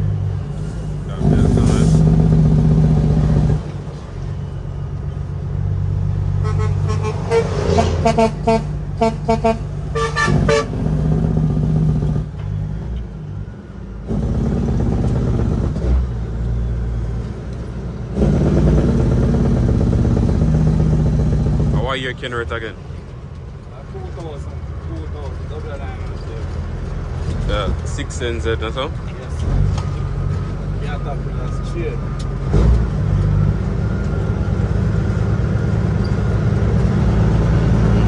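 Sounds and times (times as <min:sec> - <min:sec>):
diesel engine under heavy load: 0:00.0 - 0:38.0
vehicle horn short toots: 0:06.4 - 0:10.8.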